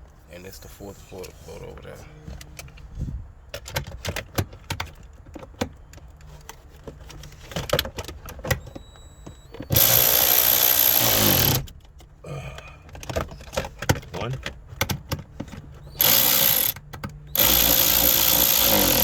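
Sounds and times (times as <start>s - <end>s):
power driver running: 8.6s - 11.7s, 15.8s - 19.0s.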